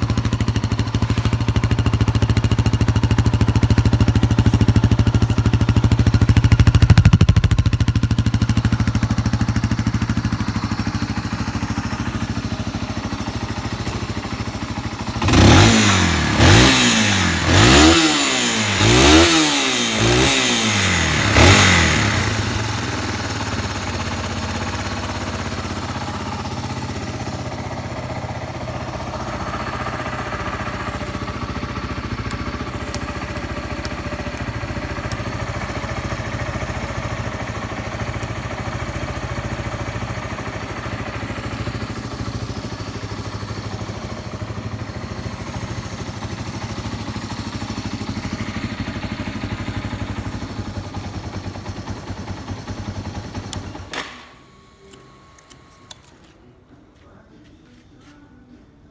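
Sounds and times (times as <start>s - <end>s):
motorcycle engine revving and idling: 0.0s - 54.3s.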